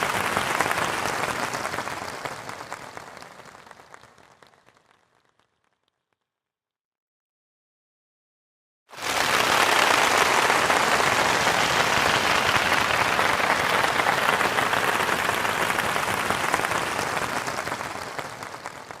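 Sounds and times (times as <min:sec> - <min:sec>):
audience applauding: 0:00.0 - 0:05.6, 0:08.9 - 0:19.0.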